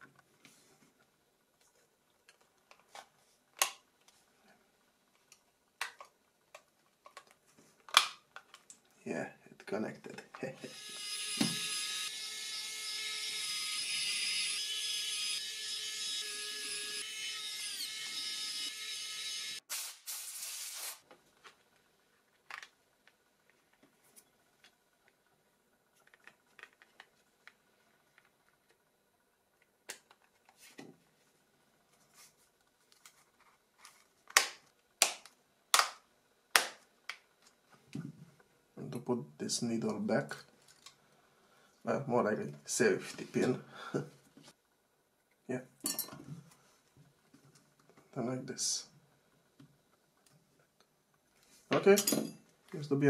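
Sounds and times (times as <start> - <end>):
small electric tool whirring: 10.6 - 21.0.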